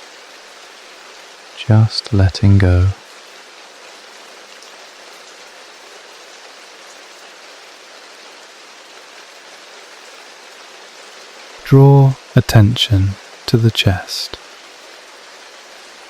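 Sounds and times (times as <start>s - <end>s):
steady rain hissing: 0.0s - 16.0s.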